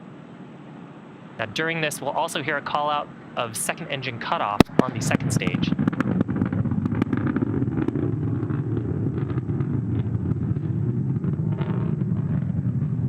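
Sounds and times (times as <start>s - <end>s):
low rocket engine rumble: 0.0s - 13.0s.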